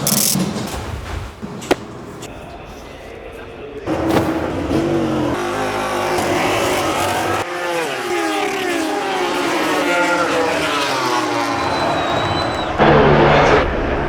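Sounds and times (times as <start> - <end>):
racing motorcycle engines revving: 3.9 - 14.0.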